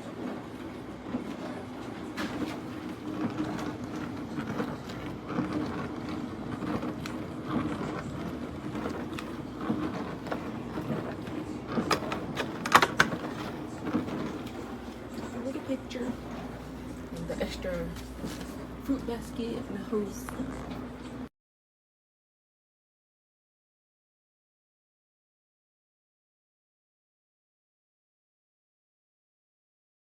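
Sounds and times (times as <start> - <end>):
dishwasher churning: 0.0 - 21.3.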